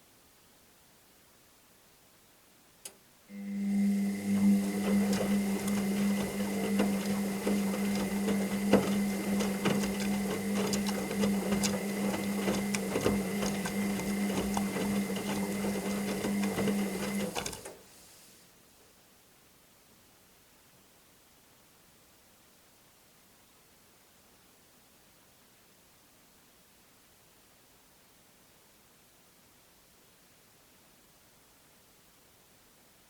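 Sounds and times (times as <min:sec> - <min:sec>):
washing machine motor humming: 0:03.3 - 0:17.8
washing machine click: 0:03.7 - 0:17.8.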